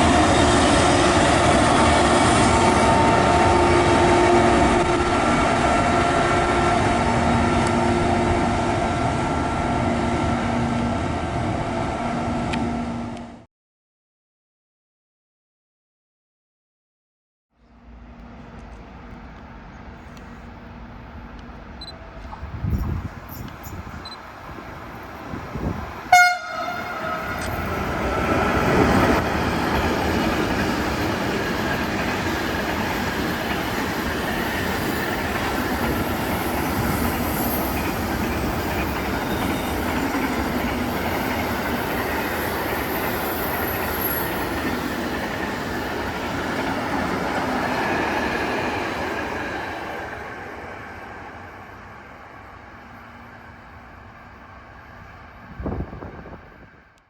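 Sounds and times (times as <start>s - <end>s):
train horn blast: 0.0s - 9.0s, 26.1s - 28.8s
train rumble and wheel noise: 0.0s - 13.5s, 17.7s - 57.0s.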